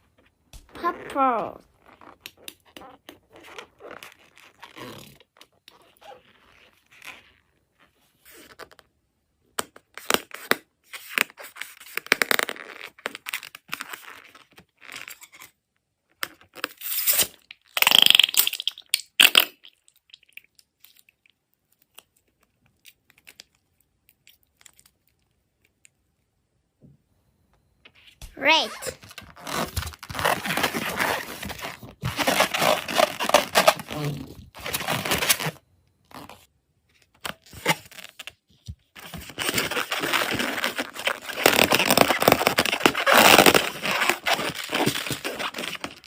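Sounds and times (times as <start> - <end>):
balloon and slime handling rustles: 0.0 - 18.1, 27.9 - 46.0.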